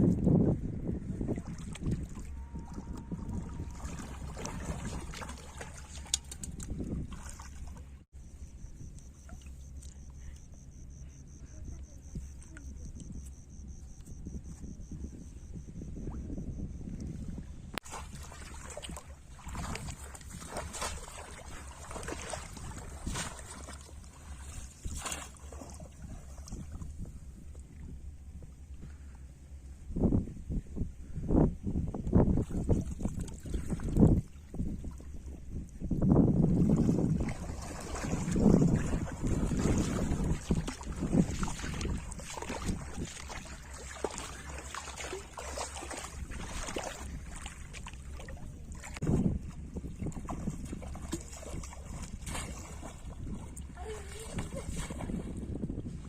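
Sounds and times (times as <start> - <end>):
steady low rumble: 0.0 - 56.0
river water splashing: 1.2 - 8.1, 17.8 - 27.0, 36.5 - 55.4.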